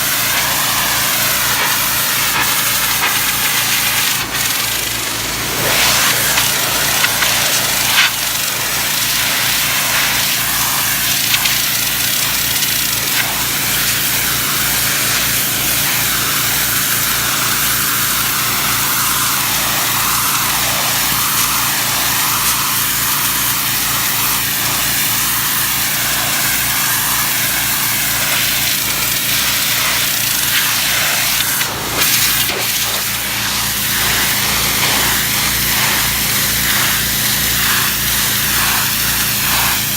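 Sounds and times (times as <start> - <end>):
pressure washer engine running: 0.0 - 39.9
water jet hissing against brick: 0.0 - 39.9.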